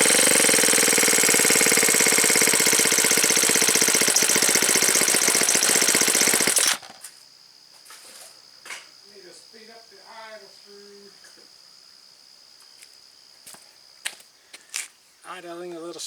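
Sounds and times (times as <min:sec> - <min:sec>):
string trimmer engine idling: 0:00.0 - 0:07.0.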